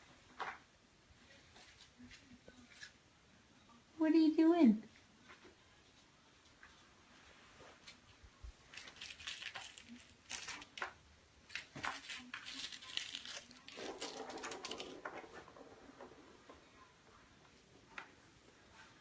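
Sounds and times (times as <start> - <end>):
kittens rustling and scratching: 1.2 - 3.0, 5.2 - 19.0.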